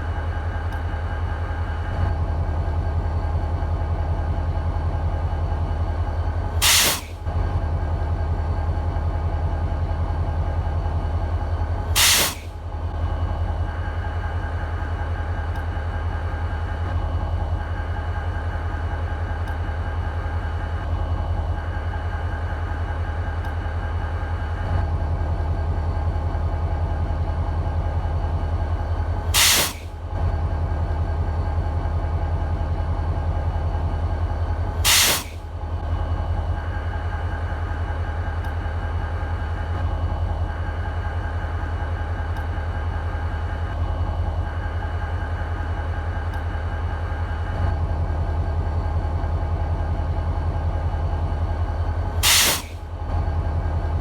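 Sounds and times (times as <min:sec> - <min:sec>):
diesel locomotive idling: 0:00.0 - 0:54.0
air hiss bursts: 0:06.6 - 0:07.2, 0:12.0 - 0:12.5, 0:29.4 - 0:29.9, 0:34.8 - 0:35.4, 0:52.2 - 0:52.8.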